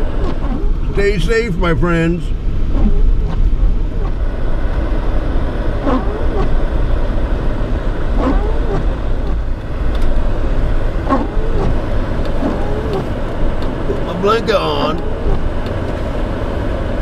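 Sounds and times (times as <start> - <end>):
low rumble of engine and road: 0.0 - 17.0.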